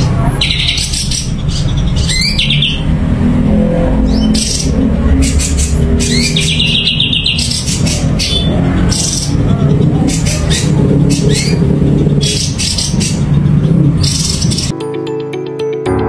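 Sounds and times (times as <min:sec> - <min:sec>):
songbird chattering trill: 0:00.0 - 0:02.9, 0:04.1 - 0:14.7
steady low rumble: 0:00.0 - 0:14.7.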